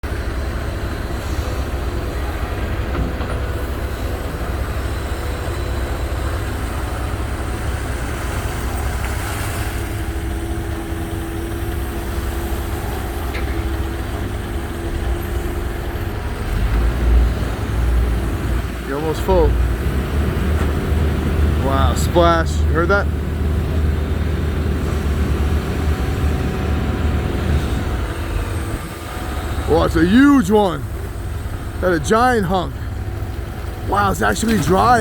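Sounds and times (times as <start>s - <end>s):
excavator engine and hydraulics: 0.0s - 35.0s
steady higher hum: 28.7s - 35.0s.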